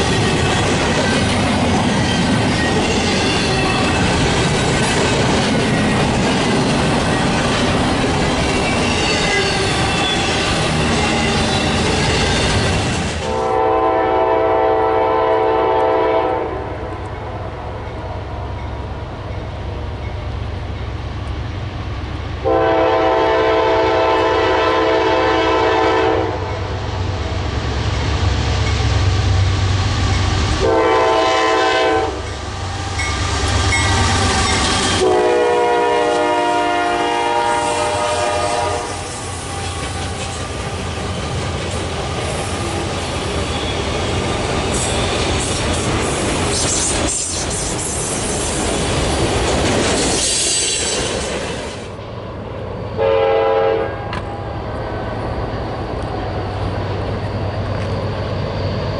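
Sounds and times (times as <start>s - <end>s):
low rumble of passing train: 0.0s - 58.9s
locomotive air horn: 13.2s - 16.8s, 22.4s - 26.5s, 30.6s - 32.3s, 34.9s - 39.5s, 53.0s - 54.2s.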